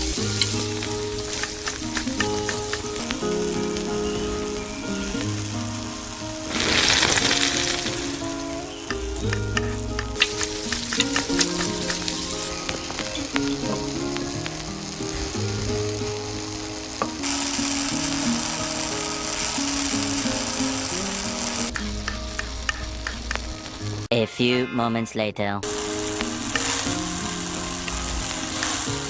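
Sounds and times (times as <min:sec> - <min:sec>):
sizzling hiss: 0:00.0 - 0:24.2, 0:25.6 - 0:29.0
background music melody: 0:00.0 - 0:29.0
sharp clicks: 0:00.1 - 0:03.8, 0:06.5 - 0:14.6, 0:19.6 - 0:23.8.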